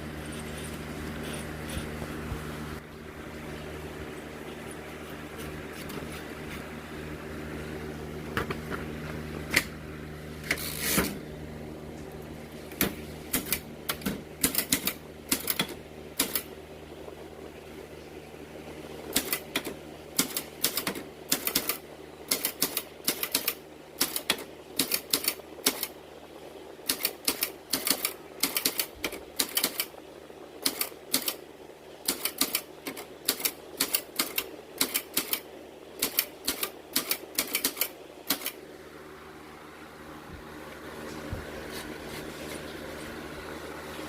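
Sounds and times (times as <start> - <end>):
steady low hum: 0.0 - 44.0
manual typewriter typing: 12.8 - 16.5, 19.1 - 25.9, 26.9 - 29.9, 30.6 - 31.4, 32.1 - 35.4, 36.0 - 38.6.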